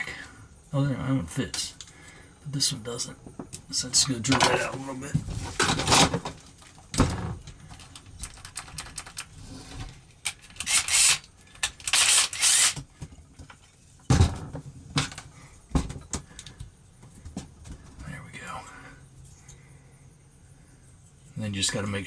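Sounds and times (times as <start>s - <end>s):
small handling clicks: 7.6s - 9.4s, 10.2s - 12.8s
drill drilling: 10.6s - 12.8s.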